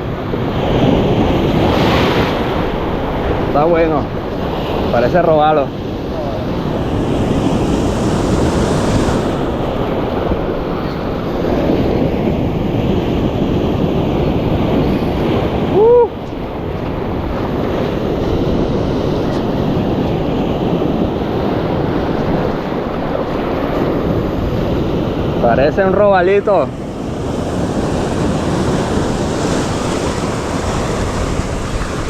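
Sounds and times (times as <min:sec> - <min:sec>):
surf: 0:00.0 - 0:32.0
wind buffeting microphone: 0:00.0 - 0:32.0.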